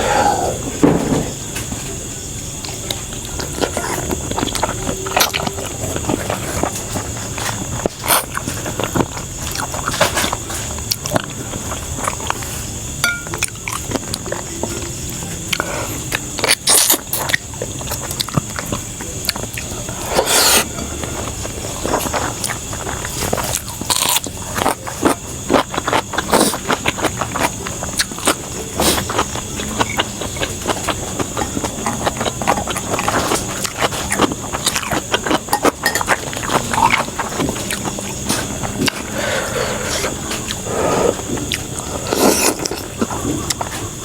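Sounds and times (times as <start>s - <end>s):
chewing and lip smacking: 13.3s - 39.2s, 39.8s - 44.0s
crunchy bites: 16.4s - 44.0s.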